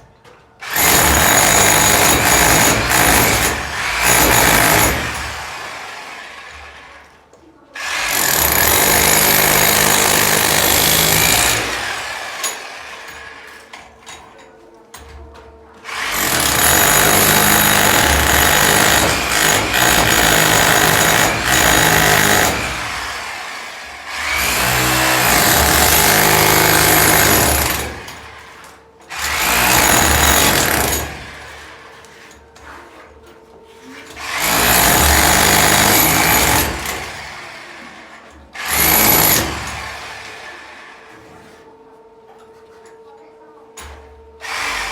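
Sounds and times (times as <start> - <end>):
handheld power tool motor: 7.8 - 13.7, 15.9 - 28.3, 29.1 - 31.4, 34.0 - 37.8.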